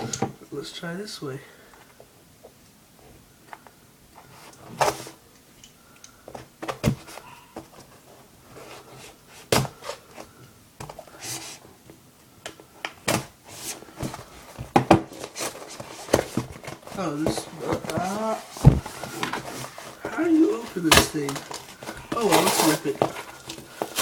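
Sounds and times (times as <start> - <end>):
cardboard box knocking: 16.0 - 19.5.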